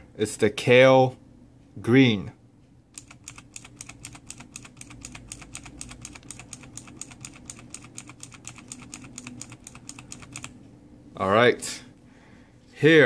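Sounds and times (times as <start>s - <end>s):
mechanical keyboard typing: 3.0s - 10.6s.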